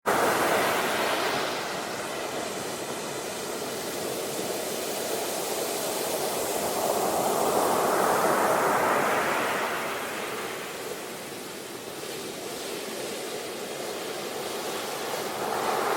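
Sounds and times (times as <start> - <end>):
sea wave washing: 12.2 - 15.9.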